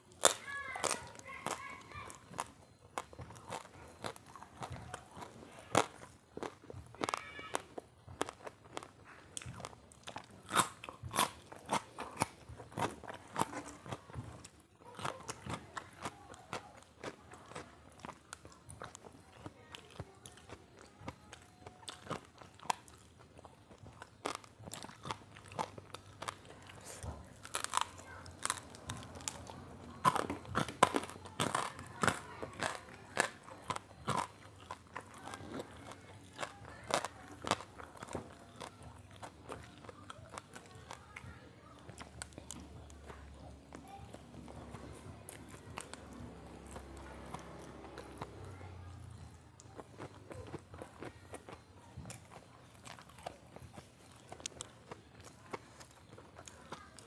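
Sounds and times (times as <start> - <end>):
person chewing crunchy food: 0.0 - 57.0.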